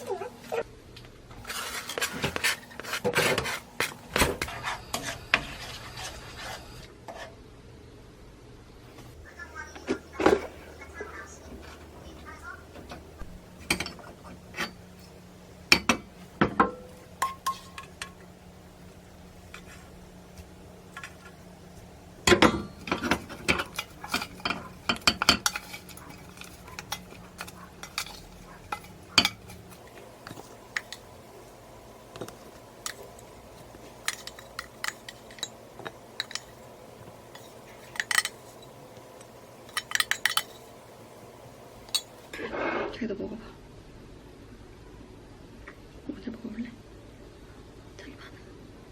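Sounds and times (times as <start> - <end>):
low appliance hum: 0.0 - 48.9
cutlery and dishes clinking: 22.3 - 31.1, 32.1 - 40.8.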